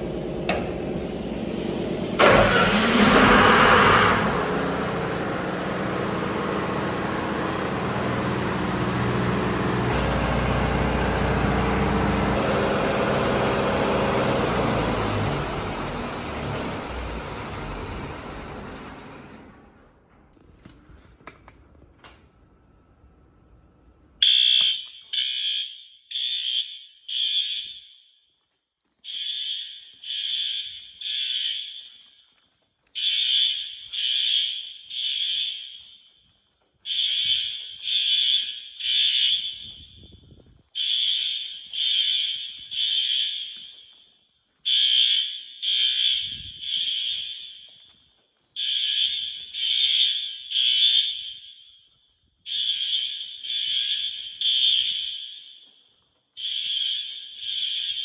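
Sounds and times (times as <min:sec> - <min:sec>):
fire alarm horn blasts: 0:02.2 - 0:16.3, 0:24.2 - 0:28.2, 0:29.0 - 0:32.2, 0:33.0 - 0:44.0, 0:44.6 - 0:47.9, 0:48.6 - 0:55.7, 0:56.4 - 0:58.0.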